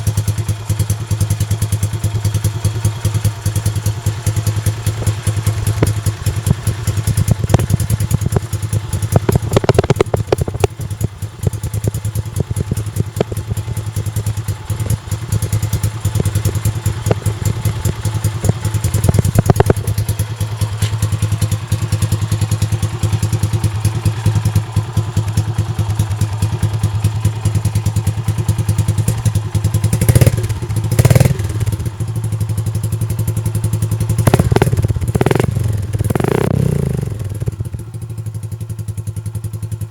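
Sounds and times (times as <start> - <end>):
motorcycle engine idling: 0.0 - 39.9.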